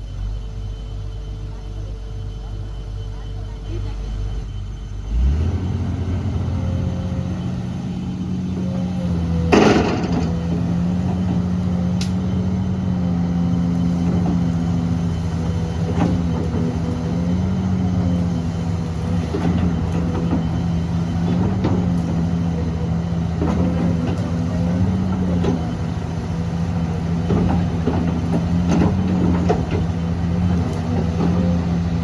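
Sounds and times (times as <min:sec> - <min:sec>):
heavy machine engine running: 0:00.0 - 0:32.0
loud clatter: 0:09.5 - 0:11.3.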